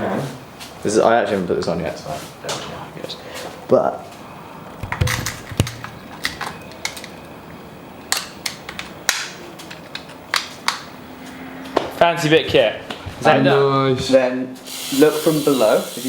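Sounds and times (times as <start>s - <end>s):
small parts clicking and knocking: 4.8s - 7.2s.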